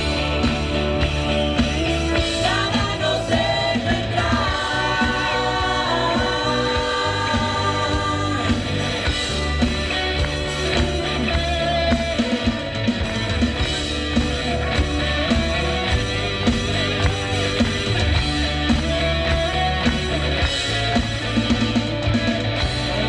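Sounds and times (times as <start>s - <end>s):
steady drum beat: 0.0s - 23.0s
worship band playing: 0.0s - 23.0s.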